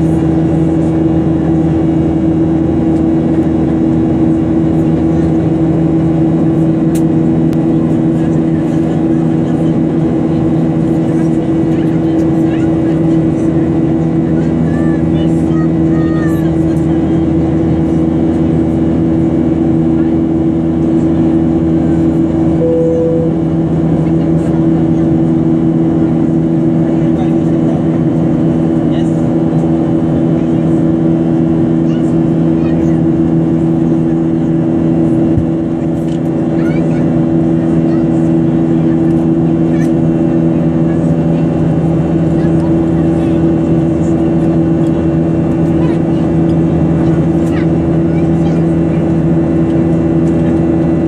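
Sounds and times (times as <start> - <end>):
jet engines droning: 0.0 - 51.0
brief high tone: 22.6 - 23.9.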